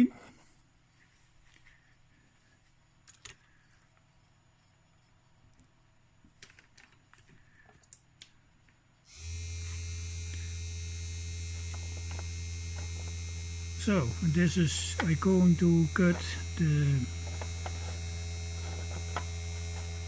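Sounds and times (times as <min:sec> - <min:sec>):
grinding machine motor humming: 0:09.1 - 0:20.0.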